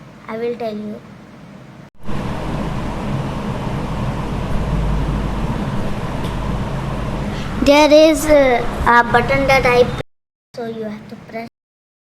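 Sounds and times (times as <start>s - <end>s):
low hum: 2.0s - 9.5s.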